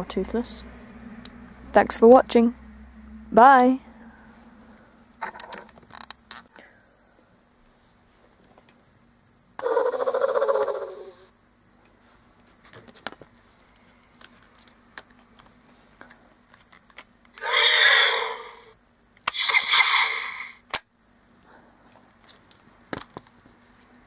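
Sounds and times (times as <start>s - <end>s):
electronic dragon roar from toy speaker: 9.6s - 11.3s, 17.4s - 20.6s.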